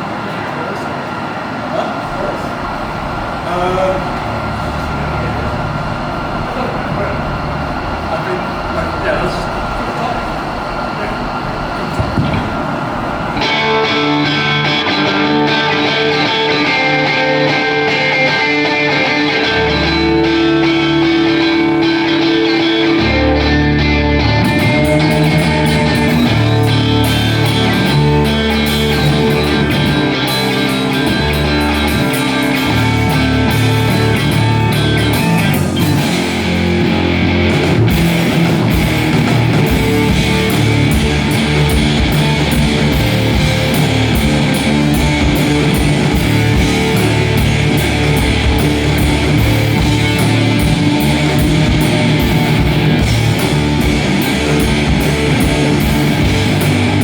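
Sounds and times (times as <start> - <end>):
electric guitar: 1.1 - 57.0
rock band playing: 11.4 - 57.0.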